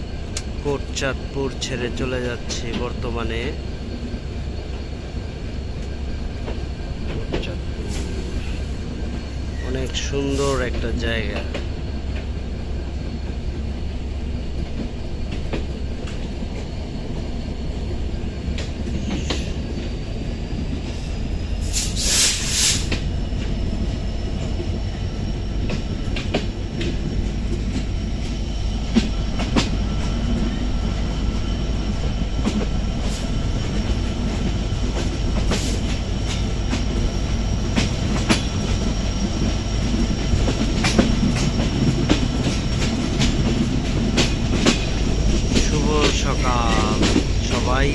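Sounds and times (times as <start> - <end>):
train rumbling on track: 0.0 - 47.9
faint high wheel squeal: 7.8 - 10.7
loud hiss: 21.6 - 22.9
wheels clicking over rail joints: 32.4 - 47.6.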